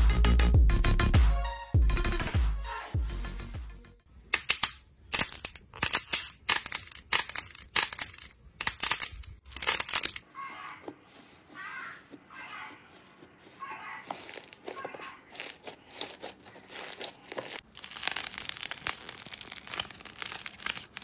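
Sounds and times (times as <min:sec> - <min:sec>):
slime squished by hand: 0:14.0 - 0:21.0.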